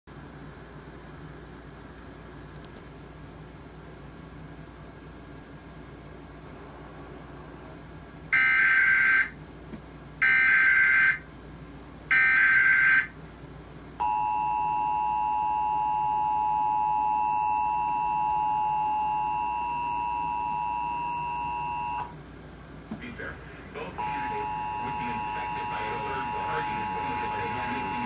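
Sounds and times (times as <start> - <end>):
two-tone attention signal: 14.0 - 22.1, 24.0 - 28.0.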